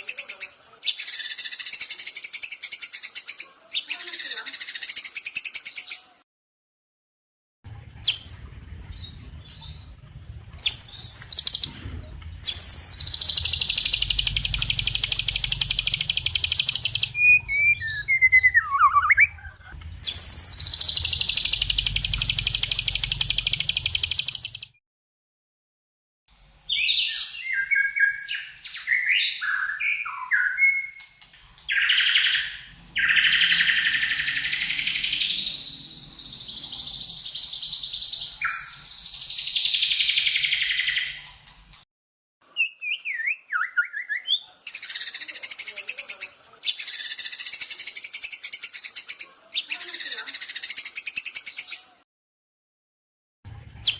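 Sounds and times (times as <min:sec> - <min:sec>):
bird chattering and whistling: 0:10.6 - 0:11.7, 0:12.4 - 0:24.8, 0:31.7 - 0:41.3, 0:42.6 - 0:51.8
songbird rattling trills: 0:12.4 - 0:17.8, 0:20.0 - 0:24.7.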